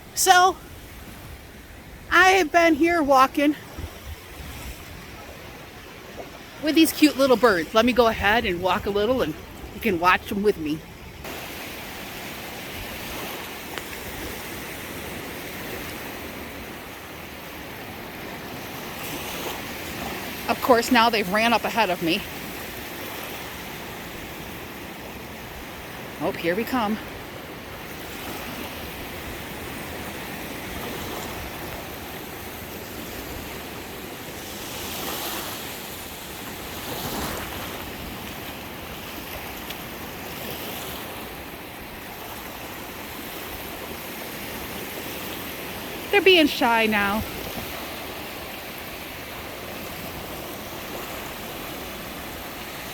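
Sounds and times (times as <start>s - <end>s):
waves washing onto beach: 0.0s - 52.9s.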